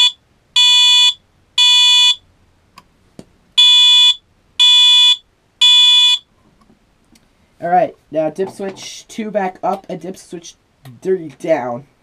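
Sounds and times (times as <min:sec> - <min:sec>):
fire alarm horn pulsing tone: 0:00.0 - 0:02.2, 0:03.6 - 0:06.2.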